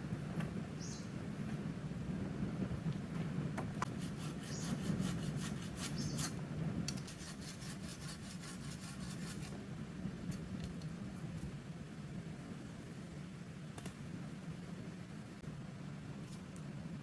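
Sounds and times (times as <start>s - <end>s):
hand tool rasping through wood: 3.9s - 6.3s, 7.0s - 9.5s.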